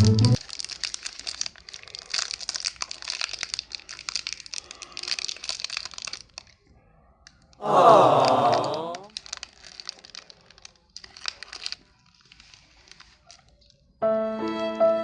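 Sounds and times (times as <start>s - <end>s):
crinkling and crackling: 0.0s - 7.6s, 8.6s - 14.0s
loud voice falling in pitch: 7.6s - 9.1s.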